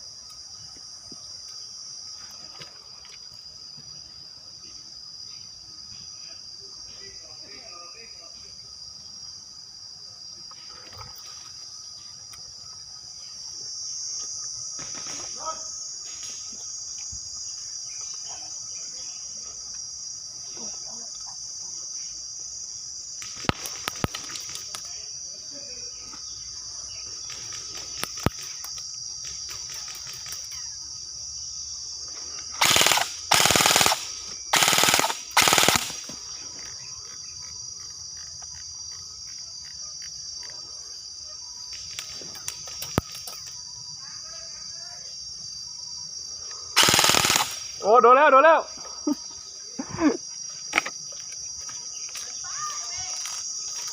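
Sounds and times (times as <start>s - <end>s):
insects droning: 0.0s - 53.9s
airsoft guns firing: 32.6s - 36.2s, 46.8s - 47.8s.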